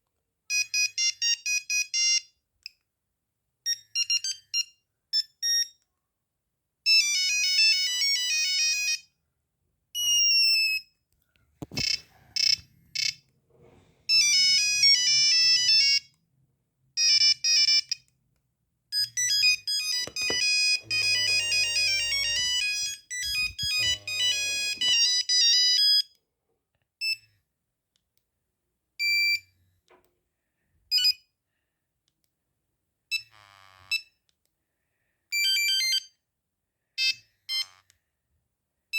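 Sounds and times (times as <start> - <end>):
monophonic phone ringtone melodies: 19.4 - 25.8.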